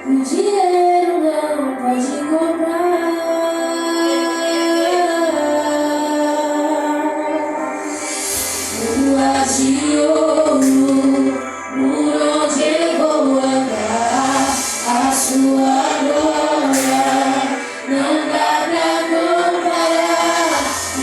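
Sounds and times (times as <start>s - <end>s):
gospel group singing: 0.0s - 21.0s
instrumental accompaniment: 0.0s - 21.0s.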